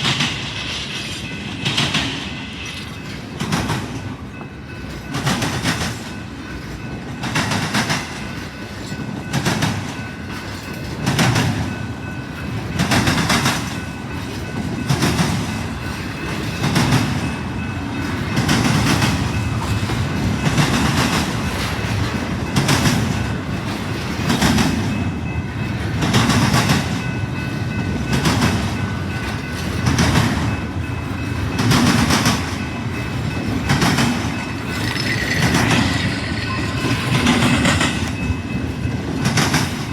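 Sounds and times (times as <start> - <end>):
train cars rumbling past: 0.0 - 39.9
wheels clacking over rail joints: 31.2 - 39.9.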